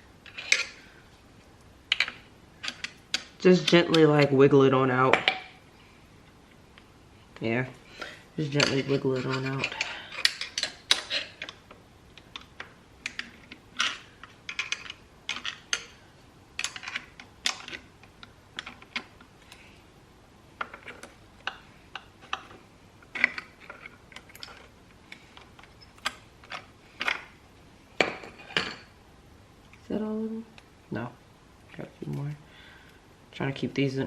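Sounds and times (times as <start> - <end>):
metal plates scraping: 8.4 - 11.6.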